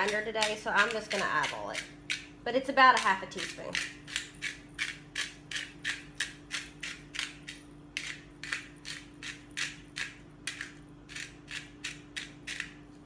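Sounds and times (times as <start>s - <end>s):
pepper grinder crunching: 0.0s - 13.0s.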